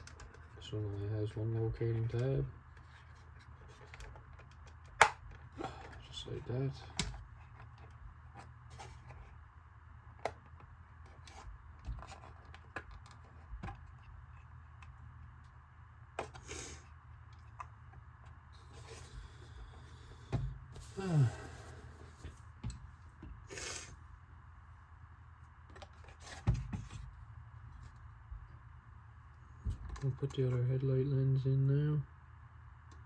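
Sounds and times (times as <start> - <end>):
plastic parts clicking and rubbing: 0.0 - 1.0, 1.9 - 6.1, 10.1 - 15.5
steady low hum: 0.0 - 33.0.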